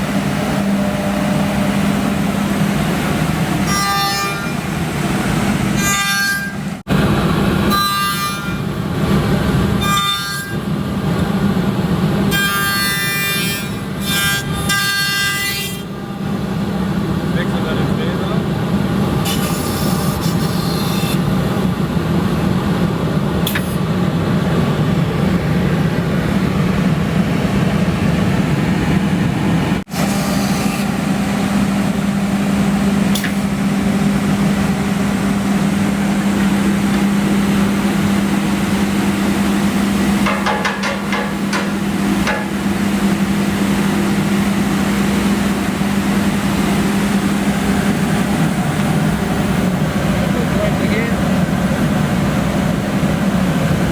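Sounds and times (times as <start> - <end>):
machine humming: 0.0 - 53.9
knocks: 40.2 - 42.5.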